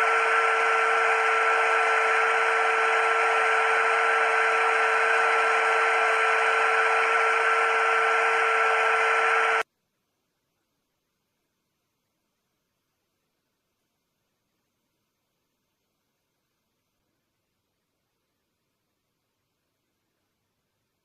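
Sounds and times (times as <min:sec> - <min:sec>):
small electric motor whining: 0:00.0 - 0:09.6.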